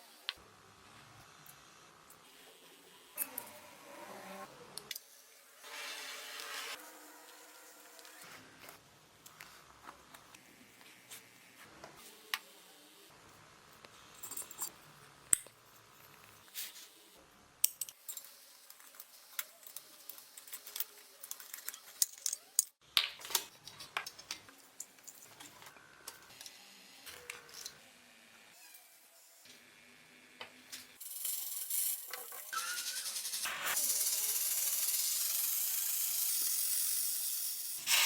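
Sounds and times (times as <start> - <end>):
metal parts and tools clinking: 14.1 - 15.6, 17.6 - 25.7.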